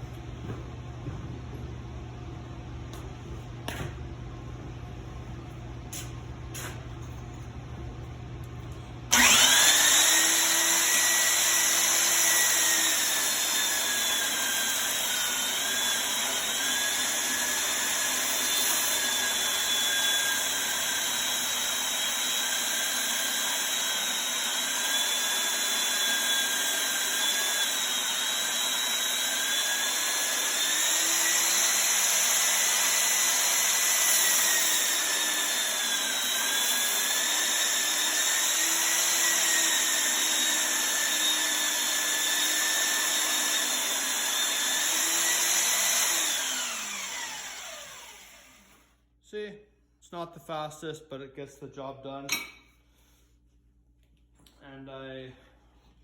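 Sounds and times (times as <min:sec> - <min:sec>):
belt grinder high whine: 0:09.1 - 0:48.9.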